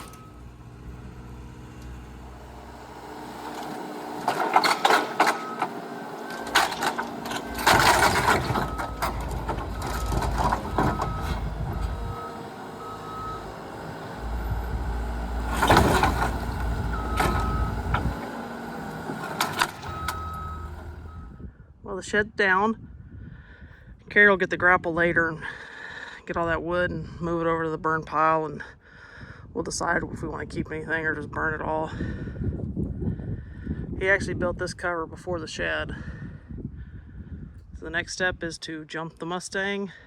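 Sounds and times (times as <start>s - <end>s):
reversing alarm beeping: 0.0s - 1.1s, 4.7s - 6.6s, 7.2s - 18.6s, 19.5s - 21.5s
heavy machine engine rumbling: 0.0s - 21.9s
wooden frame crashing down: 6.5s - 11.0s.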